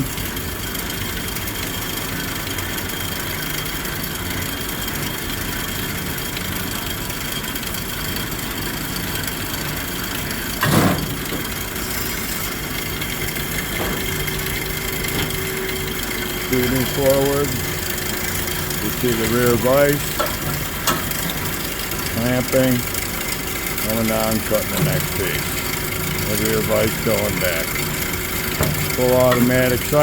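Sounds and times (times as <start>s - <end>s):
loud clunk: 10.6s - 11.5s, 28.5s - 29.0s.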